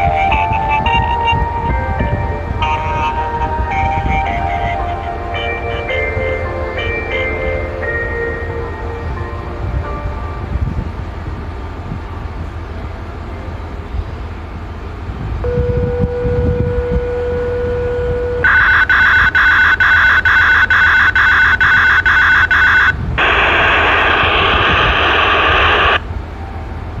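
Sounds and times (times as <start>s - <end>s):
steady radio tone: 15.5s - 26.0s
radio static hiss: 18.5s - 26.1s.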